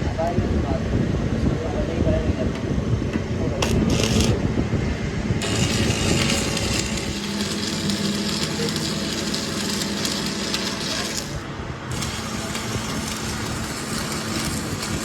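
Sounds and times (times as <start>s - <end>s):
crackling hiss of metalwork: 3.6s - 4.4s, 5.4s - 15.0s.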